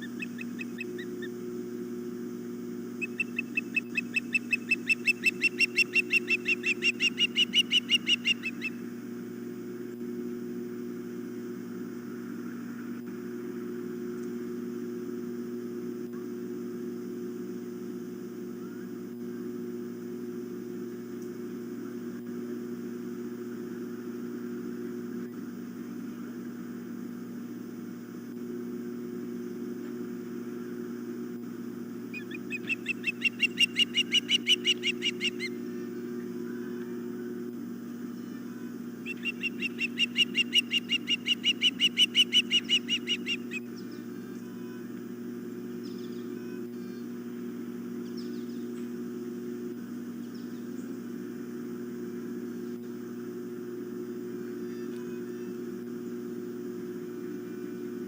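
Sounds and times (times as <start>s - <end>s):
steady low hum: 0.0s - 58.0s
bird whistled chirps: 3.0s - 8.8s, 32.2s - 35.5s, 39.1s - 43.9s.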